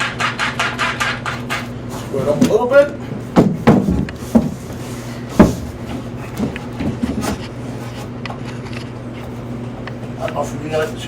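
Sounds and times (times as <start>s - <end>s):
steady low hum: 0.0s - 11.0s
knocks of lumber and hand tools: 3.3s - 7.4s.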